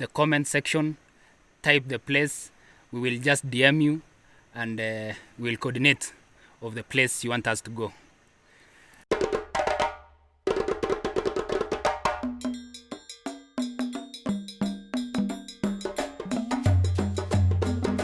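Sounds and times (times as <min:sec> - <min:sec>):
music with wooden percussion beat: 0:09.1 - 0:18.0.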